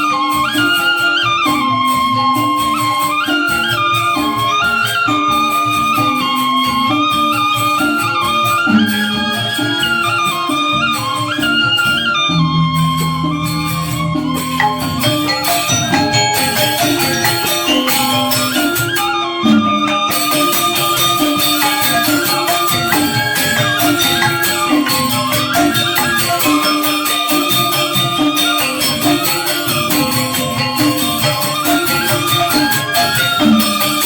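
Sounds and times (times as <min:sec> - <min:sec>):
gamelan ensemble playing: 0:00.0 - 0:34.0
high jingling shimmer: 0:12.6 - 0:19.1, 0:20.1 - 0:34.0.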